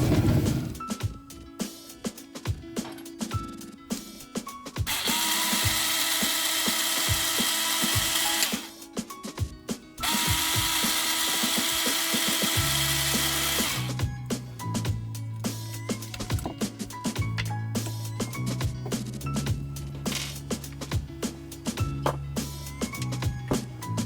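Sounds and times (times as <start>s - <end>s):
music with steady beat: 0.7s - 24.0s
power drill running: 4.9s - 8.8s, 10.0s - 14.0s.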